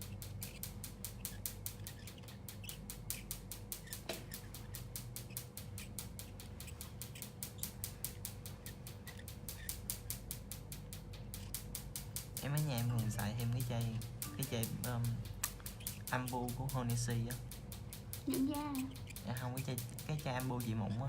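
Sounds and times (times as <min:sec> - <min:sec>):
low hum: 0:00.0 - 0:21.0
machine clicking rapidly: 0:00.0 - 0:21.0.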